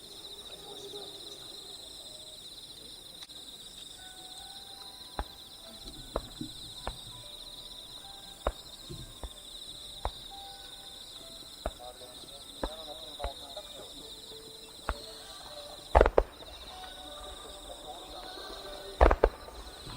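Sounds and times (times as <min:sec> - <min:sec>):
crickets chirping: 0:00.0 - 0:19.9
sharp pops or knocks: 0:05.2 - 0:07.2, 0:08.4 - 0:10.4, 0:12.6 - 0:13.6, 0:15.9 - 0:17.0, 0:19.0 - 0:19.9.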